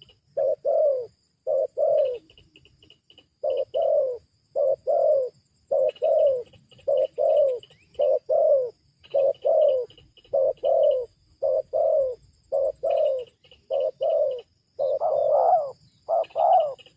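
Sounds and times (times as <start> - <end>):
dove cooing: 0.0 - 2.4, 3.4 - 16.9.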